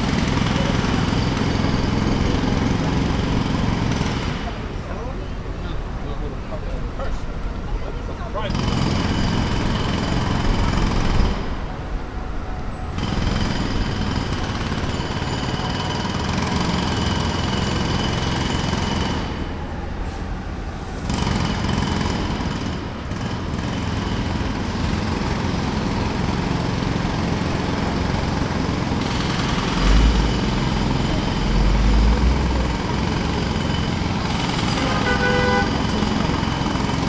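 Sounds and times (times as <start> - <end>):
jackhammer hammering: 0.0 - 5.0, 8.5 - 11.7, 13.0 - 19.8, 21.0 - 37.0
low engine running: 25.6 - 37.0.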